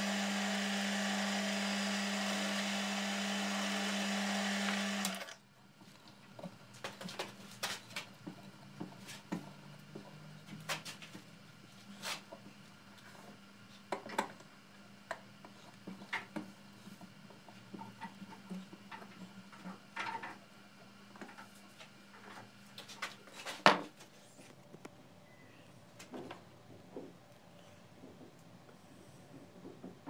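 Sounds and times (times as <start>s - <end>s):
faint low hum: 23.3s - 30.0s.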